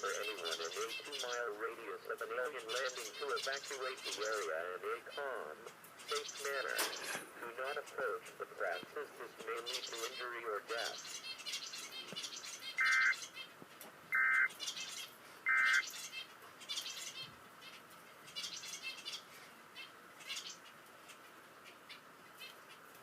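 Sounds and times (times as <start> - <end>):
birds chirping: 0.0 - 23.0
alert data tone bursts: 12.8 - 13.2, 14.2 - 14.5, 15.5 - 15.9.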